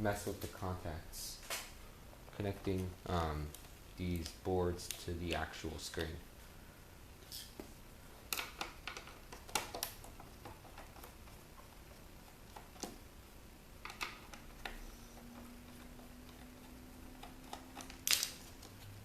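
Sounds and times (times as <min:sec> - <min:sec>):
faint low hum: 0:00.0 - 0:19.0
small parts clicking and tapping: 0:08.3 - 0:13.0, 0:13.8 - 0:19.0.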